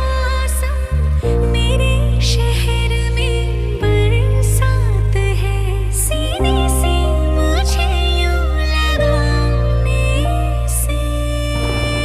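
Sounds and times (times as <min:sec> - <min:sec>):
low drone: 0:09.9 - 0:12.0.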